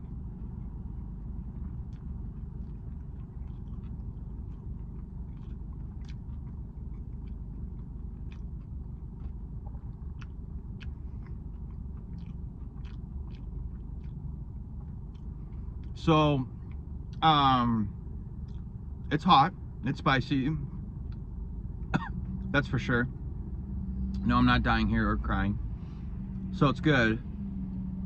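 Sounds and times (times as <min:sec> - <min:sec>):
person chewing crunchy food: 0:00.0 - 0:17.2, 0:18.0 - 0:19.0
steady low hum: 0:00.0 - 0:28.0.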